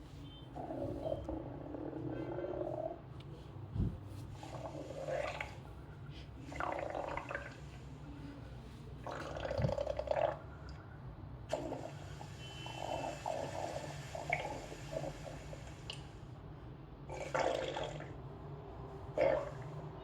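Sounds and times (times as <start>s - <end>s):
stomach gurgling: 4.4s - 5.6s, 6.5s - 7.7s, 9.0s - 10.8s, 12.8s - 15.9s, 17.1s - 18.2s, 19.1s - 20.0s.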